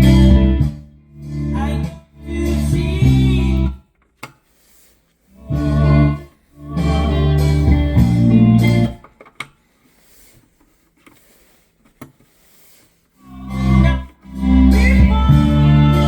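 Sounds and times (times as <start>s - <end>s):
guitar music with bass notes: 0.0s - 3.8s, 5.3s - 9.0s, 13.2s - 16.0s.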